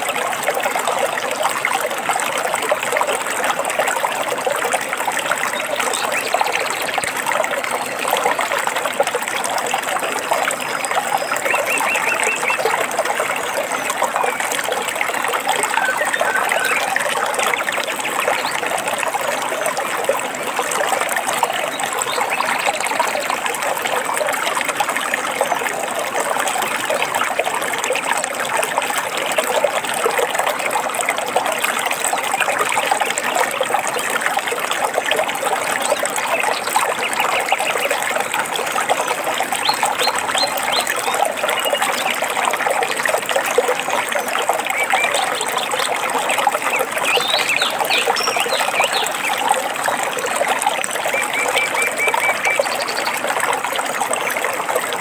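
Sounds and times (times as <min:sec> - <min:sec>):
stream trickling and splashing: 0:00.0 - 0:55.0
bird chirps: 0:15.7 - 0:17.0.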